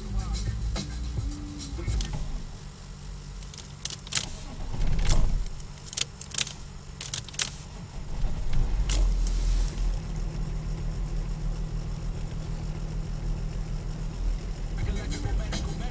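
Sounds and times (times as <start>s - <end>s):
diesel engine humming: 0.0s - 15.9s
sharp metallic clicks and jangles: 3.4s - 9.2s.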